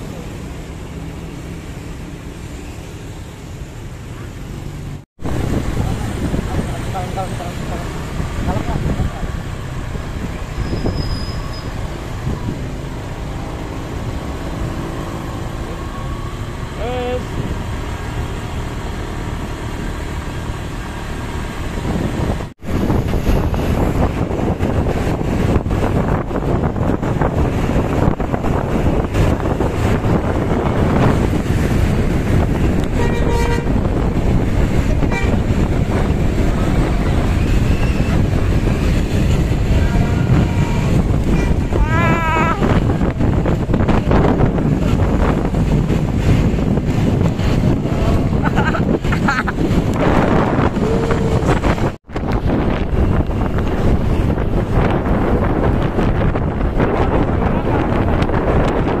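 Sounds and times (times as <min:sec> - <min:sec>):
vehicle engine rumbling: 0:00.0 - 0:59.0
bus horn toot: 0:32.8 - 0:33.9, 0:35.0 - 0:35.7, 0:40.1 - 0:41.8, 0:50.7 - 0:51.7.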